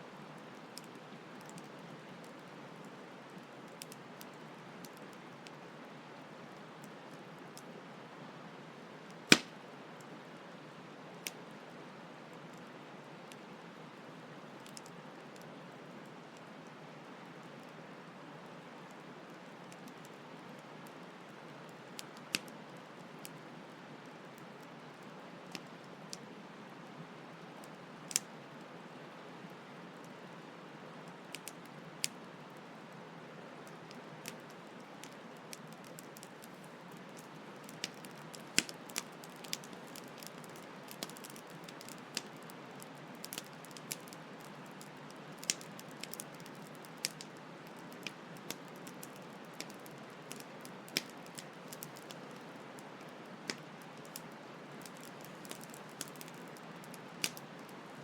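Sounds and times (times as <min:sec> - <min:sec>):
campfire crackling and popping: 0:00.2 - 0:05.6, 0:09.1 - 0:10.2, 0:19.3 - 0:23.4, 0:25.4 - 0:26.3, 0:27.5 - 0:28.4, 0:30.9 - 0:58.0.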